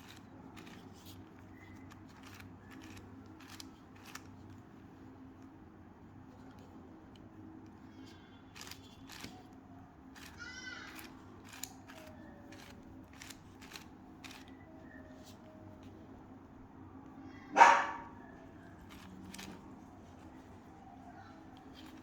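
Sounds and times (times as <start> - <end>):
puzzle cube clicking: 1.8 - 4.3, 10.2 - 14.5.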